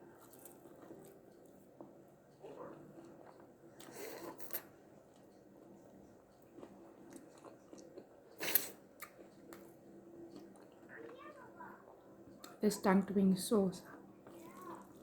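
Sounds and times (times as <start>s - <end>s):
chewing crunchy chicken wings: 0.1s - 1.6s, 2.3s - 11.2s.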